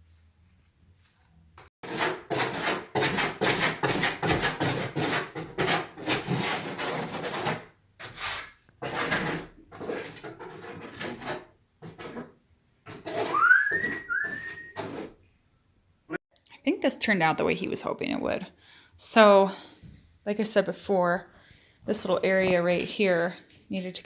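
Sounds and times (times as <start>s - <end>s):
trowel scraping mortar: 1.8s - 15.2s.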